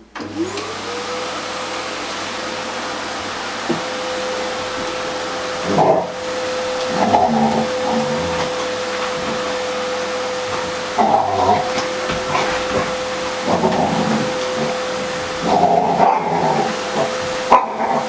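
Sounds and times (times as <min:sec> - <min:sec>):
vacuum cleaner running: 0:00.0 - 0:18.0
dog barking: 0:10.5 - 0:18.0.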